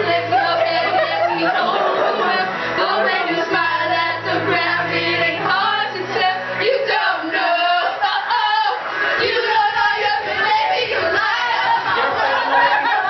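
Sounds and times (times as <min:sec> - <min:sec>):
pop song with vocals: 0:00.0 - 0:13.0.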